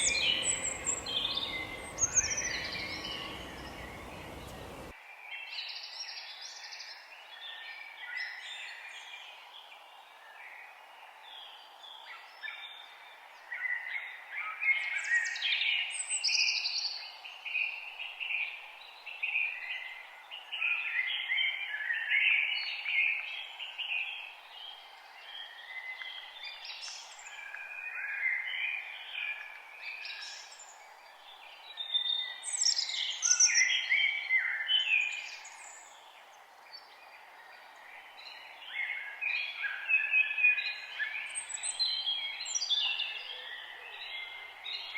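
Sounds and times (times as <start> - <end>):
songbirds singing: 0.0 - 4.9
steady background hiss: 0.0 - 4.9.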